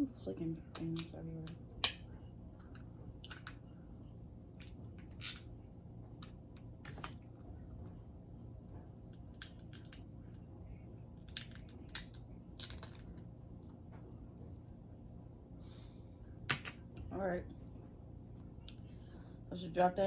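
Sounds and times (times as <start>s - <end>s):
crab shell cracking: 9.2s - 10.1s, 11.2s - 13.2s.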